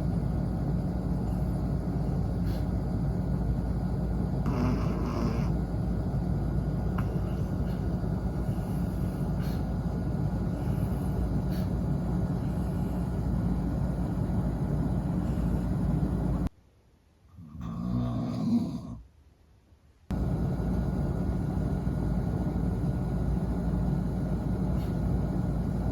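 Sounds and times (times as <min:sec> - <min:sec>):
low rumbling noise: 0:00.0 - 0:16.5, 0:20.1 - 0:25.9
dog snoring: 0:04.4 - 0:05.6, 0:17.4 - 0:19.0.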